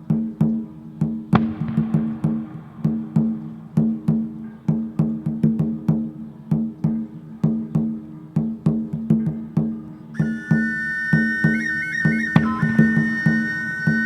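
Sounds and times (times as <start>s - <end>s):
wooden slit drum struck: 1.3s - 5.9s
high flute-like whistle: 10.2s - 14.0s.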